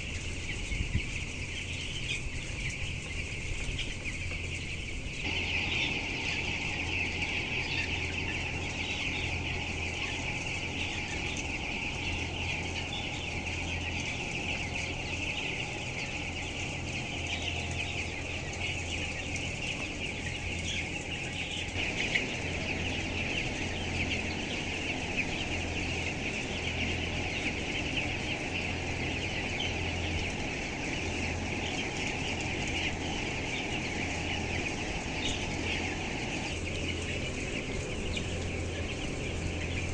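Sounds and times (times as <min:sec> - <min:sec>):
chickens peeping and clucking: 0:00.0 - 0:39.9
low steady hum: 0:00.0 - 0:39.9.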